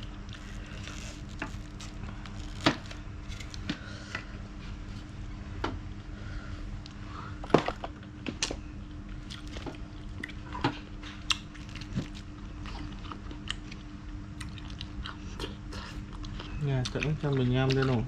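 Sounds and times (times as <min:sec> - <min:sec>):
person chewing crunchy food: 0:00.0 - 0:03.8, 0:08.4 - 0:18.0
steady low hum: 0:00.0 - 0:18.0.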